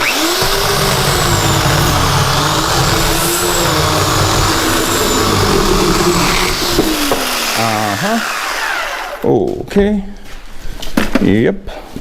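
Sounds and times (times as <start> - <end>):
electric chainsaw cutting wood: 0.0 - 9.2.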